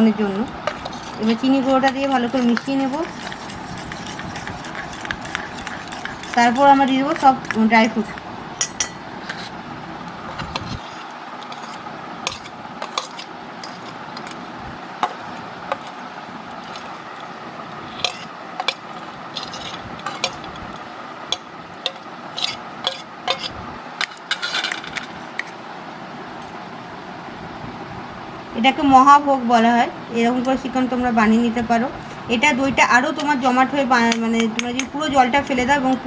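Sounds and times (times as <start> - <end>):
metal spoon scraping bowl: 0.6 - 9.6, 10.3 - 16.0, 17.9 - 20.5, 21.9 - 24.9, 33.0 - 35.8.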